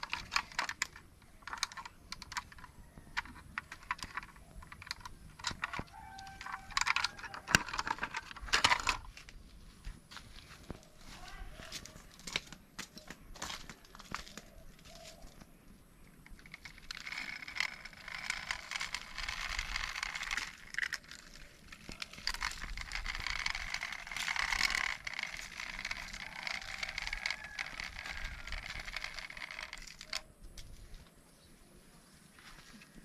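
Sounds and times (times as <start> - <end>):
toy mechanism whirring and clicking: 0.0 - 9.1, 16.2 - 30.4.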